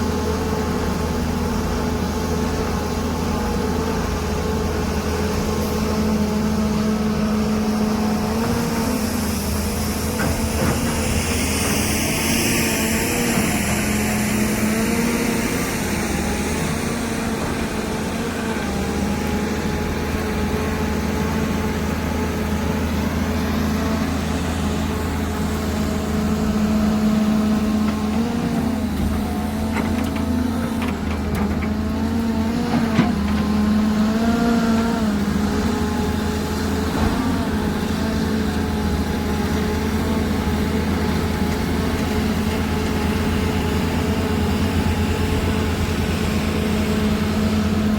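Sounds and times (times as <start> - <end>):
excavator diesel engine: 0.0 - 47.9.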